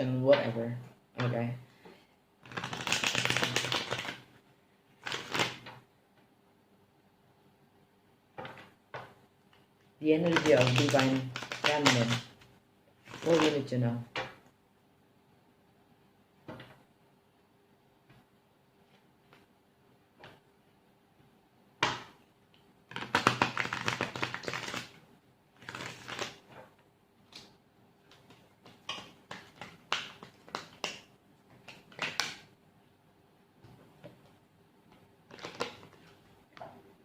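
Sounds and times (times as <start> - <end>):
cards clicking and slapping down: 22.9 - 24.9, 28.1 - 32.5, 35.3 - 36.0.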